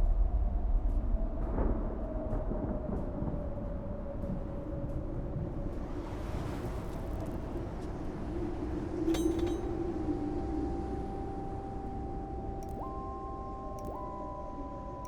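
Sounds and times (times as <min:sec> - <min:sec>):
sharp metallic clink: 0:09.1 - 0:09.8.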